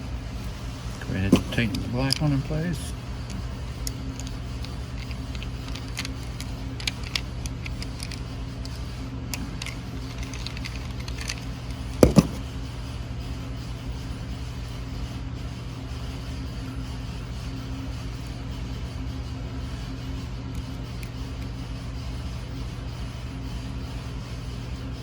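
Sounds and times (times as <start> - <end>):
steady low hum: 0.0 - 25.0
hand tools clicking and tapping: 9.4 - 12.4
louder clunk: 12.0 - 12.5.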